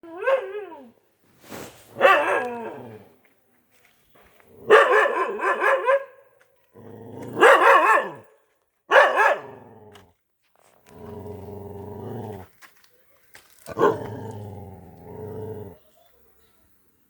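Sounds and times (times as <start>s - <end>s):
dog barking: 0.2s - 0.6s, 2.0s - 2.8s, 4.7s - 6.2s, 7.4s - 9.6s, 13.7s - 14.1s.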